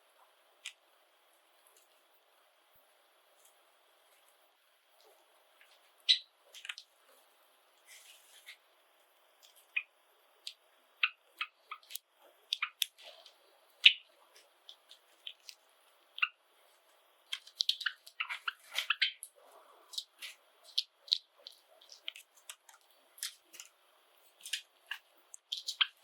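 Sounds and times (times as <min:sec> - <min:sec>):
sparrows chirping: 0:06.0 - 0:06.8.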